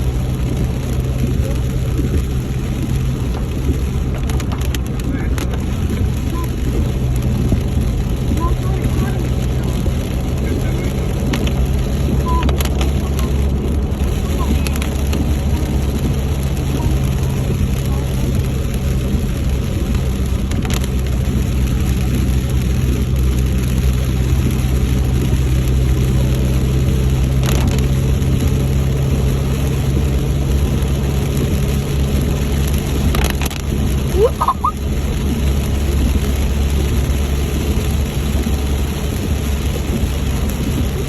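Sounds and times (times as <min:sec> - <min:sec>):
road noise: 0:00.0 - 0:41.0
vehicle engine hum: 0:00.0 - 0:41.0
short high squeak: 0:34.2 - 0:34.8.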